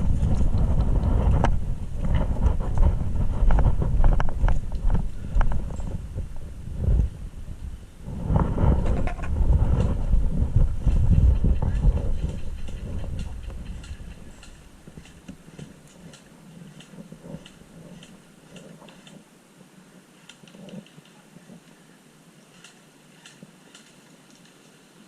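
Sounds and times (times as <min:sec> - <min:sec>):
low rumble: 0:00.0 - 0:15.1
sharp clicks: 0:11.6 - 0:19.2, 0:22.5 - 0:24.6.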